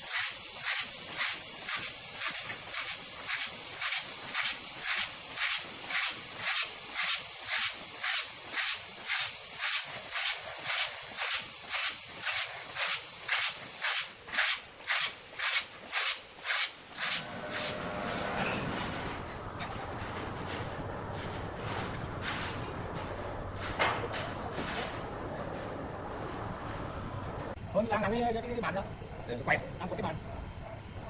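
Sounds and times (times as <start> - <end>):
machine hissing strokes: 0.0 - 18.7.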